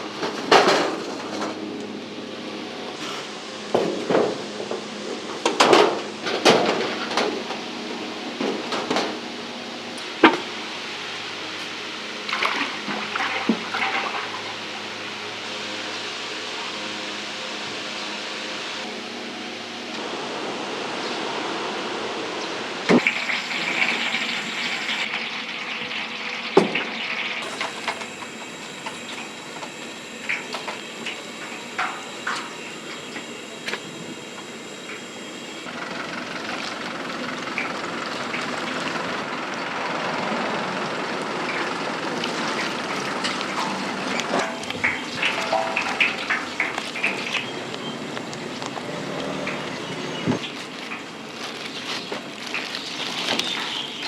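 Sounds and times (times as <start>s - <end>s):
cooking hiss: 22.7s - 54.0s.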